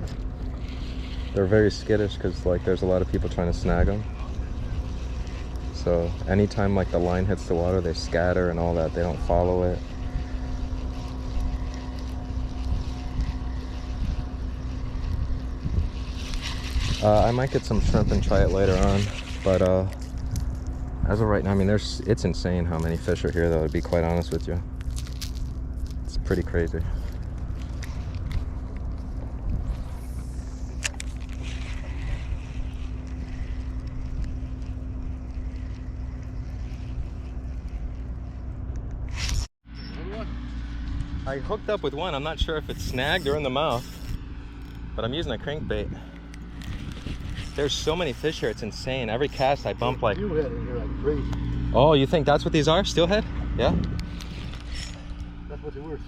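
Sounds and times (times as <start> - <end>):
wind noise on microphone: 0.0 - 7.2, 9.1 - 21.7, 26.0 - 39.5, 40.8 - 49.5, 53.3 - 55.2
boat engine rumbling: 0.0 - 56.0.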